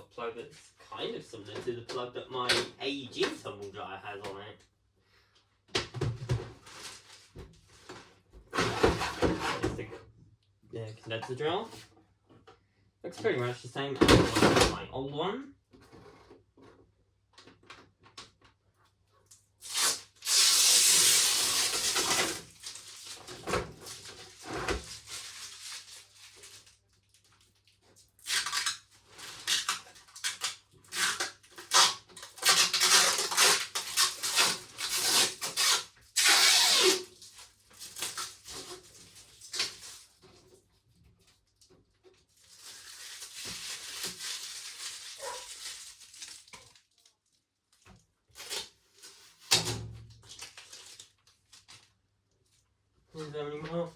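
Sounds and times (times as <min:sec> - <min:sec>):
plastic packaging rustling: 0:06.5 - 0:08.0, 0:19.6 - 0:49.6, 0:50.2 - 0:52.6.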